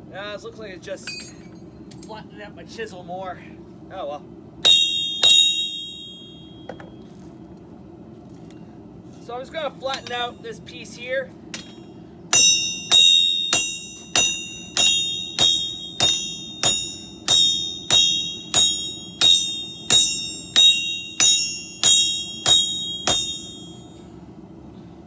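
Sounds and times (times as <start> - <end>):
hammer striking steel: 4.6 - 7.0, 9.9 - 10.3, 11.5 - 24.1.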